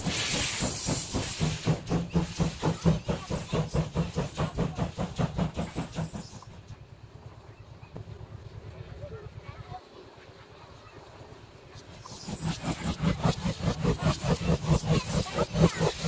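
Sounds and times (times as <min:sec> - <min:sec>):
steam hiss: 0:00.0 - 0:06.7, 0:11.8 - 0:16.0
steam locomotive chuffing beats: 0:00.0 - 0:07.4, 0:10.1 - 0:16.0.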